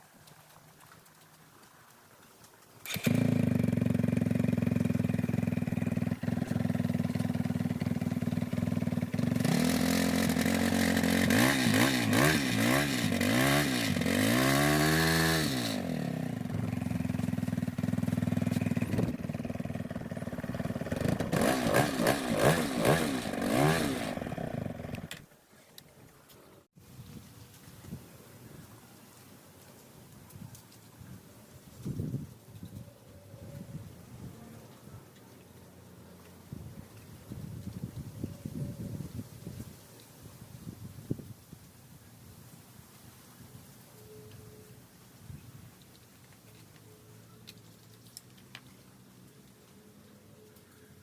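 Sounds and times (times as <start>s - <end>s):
motorcycle engine revving: 2.8s - 25.3s.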